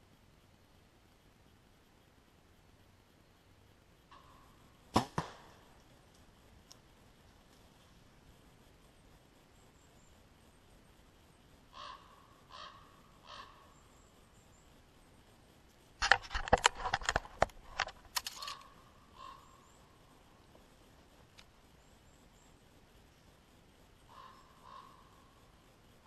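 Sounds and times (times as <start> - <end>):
crow cawing: 11.7 - 13.8, 18.4 - 19.8, 24.1 - 25.3.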